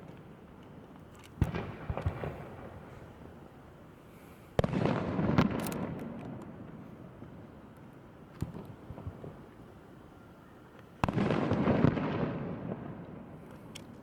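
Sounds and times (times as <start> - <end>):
fireworks crackling pops: 0.0 - 3.3, 4.5 - 9.6, 10.7 - 14.0
fireworks bangs: 1.4 - 3.0, 4.6 - 6.3, 11.0 - 13.4.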